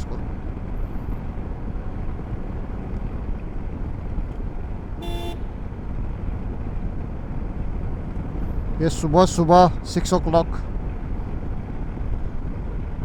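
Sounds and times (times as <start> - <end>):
wind and road rumble: 0.0 - 13.0
vehicle horn toot: 5.0 - 5.6.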